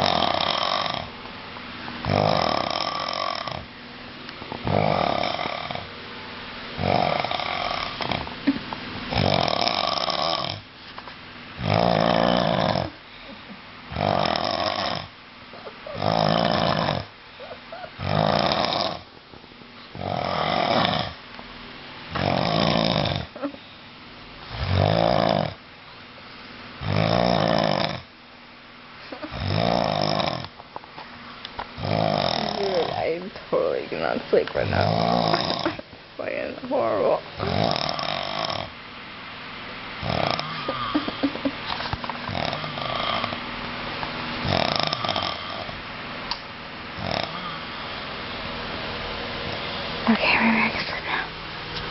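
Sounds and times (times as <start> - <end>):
man snoring loudly: 0.0 - 1.1, 2.0 - 3.7, 4.6 - 5.9, 6.8 - 8.2, 9.1 - 10.6, 11.6 - 13.0, 13.9 - 15.1, 15.9 - 17.1, 18.0 - 19.1, 20.0 - 21.2, 22.2 - 23.4, 24.5 - 25.6, 26.8 - 28.1, 29.3 - 30.5, 31.8 - 33.0, 34.6 - 35.8, 37.4 - 38.8, 40.0 - 41.3, 42.3 - 43.4, 44.4 - 45.8, 47.0 - 48.0.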